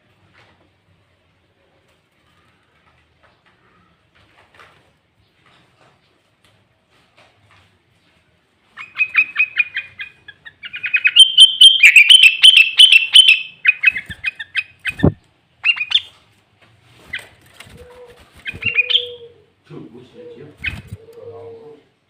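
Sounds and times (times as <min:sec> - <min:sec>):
bulbul singing fast chirping notes: 0:09.1 - 0:16.0.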